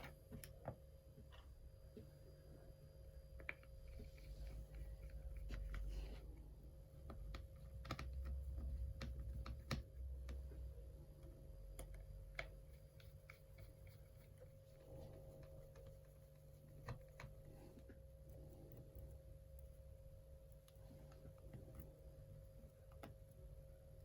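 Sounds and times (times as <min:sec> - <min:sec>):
faint steady whine: 0:00.0 - 0:24.0
low steady hum: 0:00.0 - 0:24.0
light clicks and taps: 0:03.3 - 0:14.4, 0:20.4 - 0:23.8.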